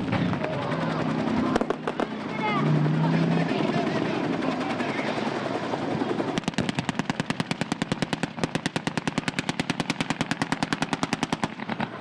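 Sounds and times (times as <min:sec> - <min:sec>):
machine gun firing: 0:06.3 - 0:12.0.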